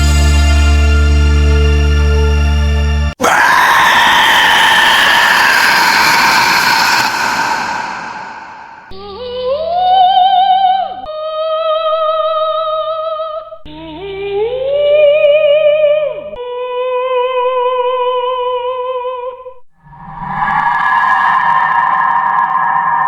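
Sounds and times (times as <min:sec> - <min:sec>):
ghost wail: 0:03.2 - 0:10.0
low hum: 0:05.3 - 0:11.3, 0:19.7 - 0:23.0.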